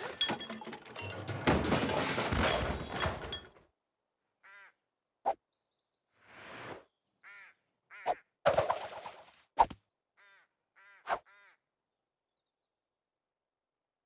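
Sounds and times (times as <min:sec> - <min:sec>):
loud noisy crash: 0:00.0 - 0:03.5.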